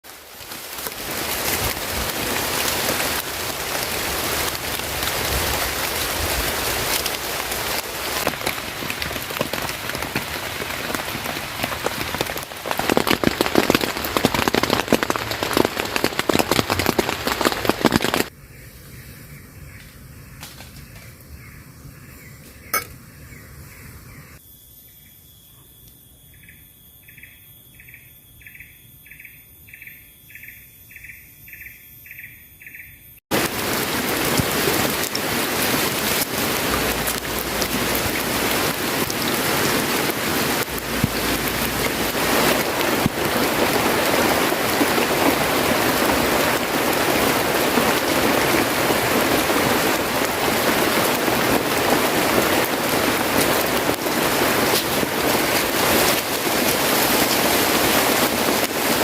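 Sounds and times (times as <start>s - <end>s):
heavy rain falling: 0.0s - 18.3s, 33.3s - 59.0s.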